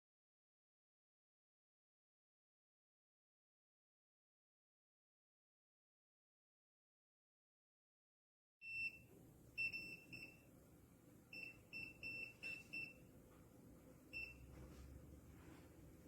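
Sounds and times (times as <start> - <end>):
faint low hum: 8.7 - 16.0.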